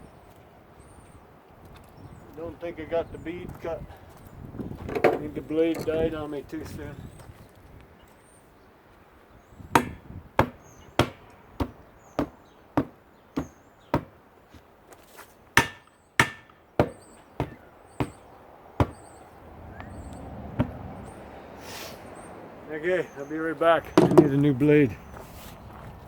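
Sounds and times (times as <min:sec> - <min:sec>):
heavy blows on tire: 0:09.7 - 0:14.1, 0:15.6 - 0:18.2, 0:18.8 - 0:19.0.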